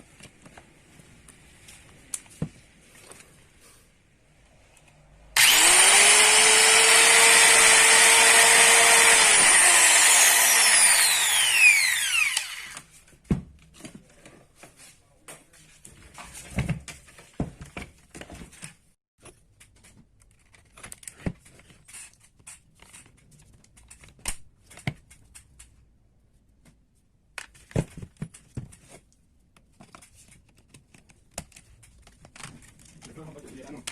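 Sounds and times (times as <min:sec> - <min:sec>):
angle grinder motor running: 0:05.4 - 0:12.8.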